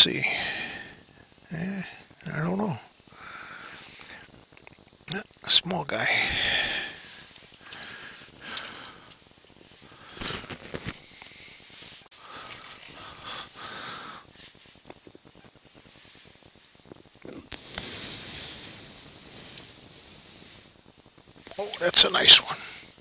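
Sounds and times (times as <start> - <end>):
breathy hiss: 0.0 - 23.0.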